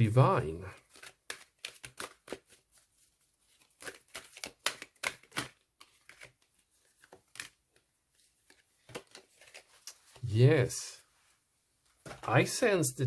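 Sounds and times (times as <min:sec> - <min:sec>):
cards being shuffled: 0:00.6 - 0:10.3.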